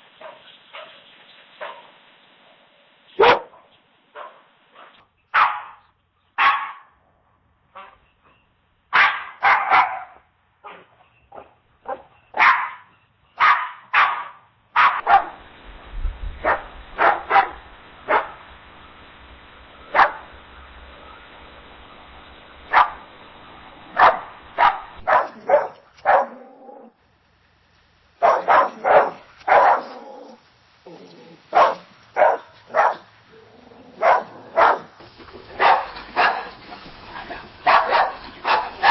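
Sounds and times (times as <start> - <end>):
steady hiss: 0.0 - 5.3, 12.8 - 38.9
dog barking: 0.2 - 1.0, 1.6 - 7.0, 7.7 - 8.0, 8.9 - 15.4, 16.4 - 18.4, 19.9 - 20.3, 22.7 - 23.0, 24.0 - 26.9, 28.2 - 30.1, 31.5 - 33.1, 34.0 - 35.0, 35.6 - 36.6, 37.6 - 38.9.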